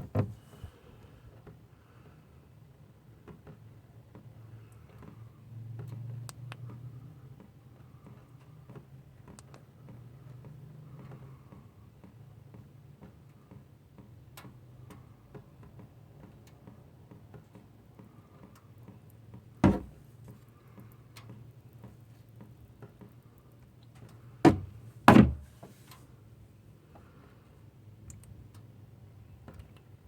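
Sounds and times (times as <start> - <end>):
loud knocks: 0.0 - 0.4, 19.6 - 20.0, 24.5 - 25.4.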